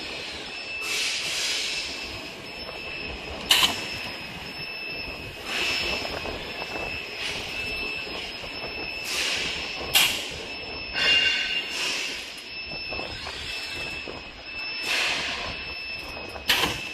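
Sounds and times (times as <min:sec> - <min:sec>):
machine whining: 0:00.0 - 0:16.9
pneumatic air hissing: 0:00.8 - 0:01.8.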